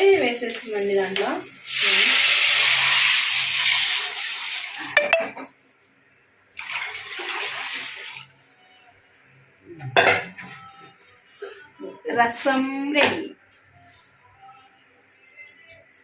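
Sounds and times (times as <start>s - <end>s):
liquid pouring with splashing hiss: 0.6s - 5.0s.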